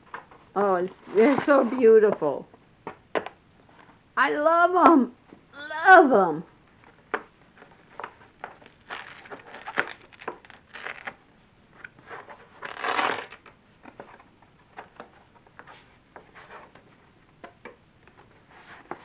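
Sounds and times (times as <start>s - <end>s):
packaging rustling and crinkling: 6.8s - 11.2s, 11.8s - 15.0s.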